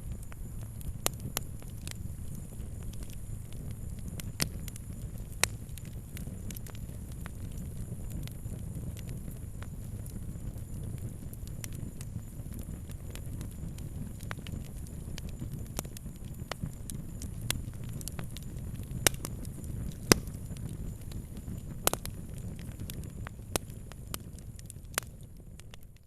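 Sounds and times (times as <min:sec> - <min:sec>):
fire crackling and popping: 0:00.0 - 0:26.0.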